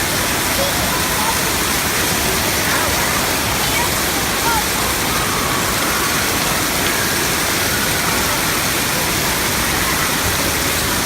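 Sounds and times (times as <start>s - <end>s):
rushing splashing water: 0.0s - 11.0s.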